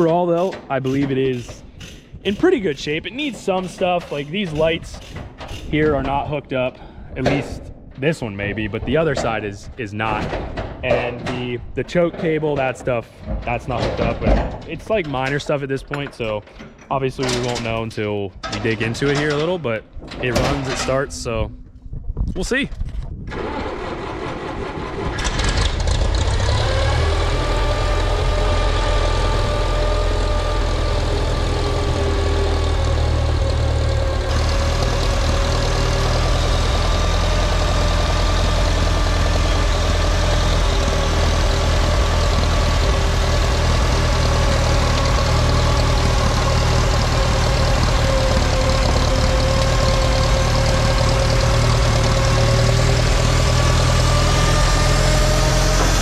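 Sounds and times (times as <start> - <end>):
tractor engine idling: 0.0 - 17.8, 23.3 - 56.0.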